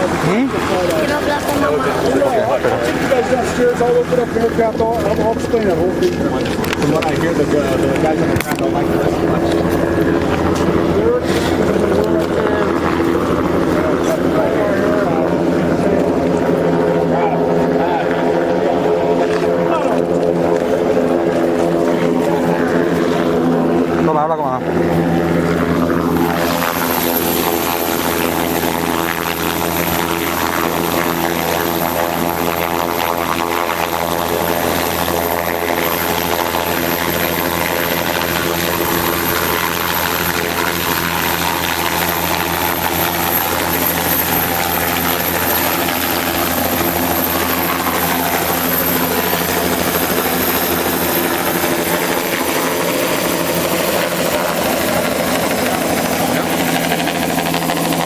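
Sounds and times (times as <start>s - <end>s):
helicopter turbine and rotor drone: 0.0s - 58.0s.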